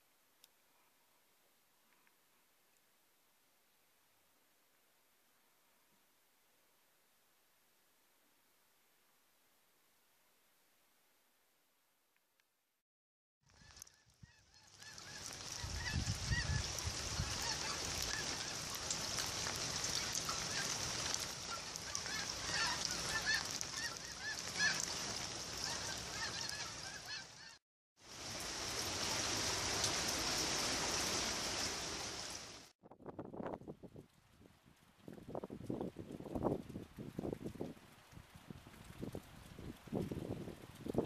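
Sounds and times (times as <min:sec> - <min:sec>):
steady rain: 0:13.5 - 0:41.0.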